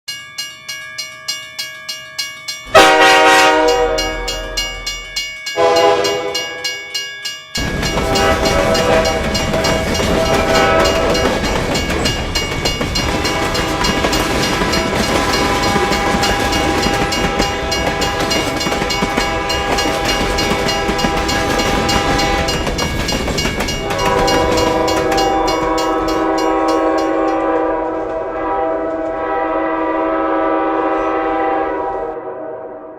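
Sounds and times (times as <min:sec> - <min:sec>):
railroad crossing bell ringing: 0:00.1 - 0:28.6
train passing rumble: 0:02.6 - 0:06.8, 0:07.6 - 0:32.9
locomotive horn blasts: 0:02.7 - 0:05.0, 0:05.6 - 0:06.7, 0:07.6 - 0:11.5, 0:13.2 - 0:22.7, 0:23.8 - 0:32.9.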